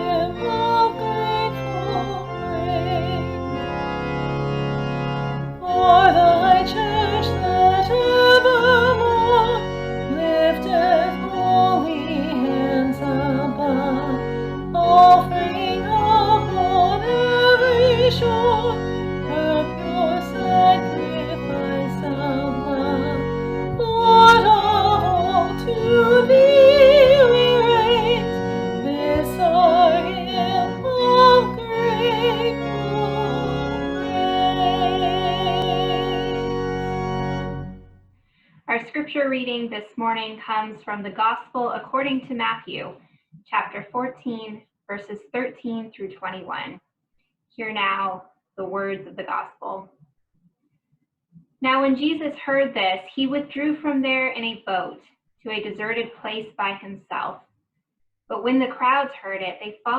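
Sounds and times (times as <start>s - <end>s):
person singing with vibrato: 0.0s - 3.7s, 5.6s - 37.4s
sustained keyboard chords: 0.0s - 38.0s.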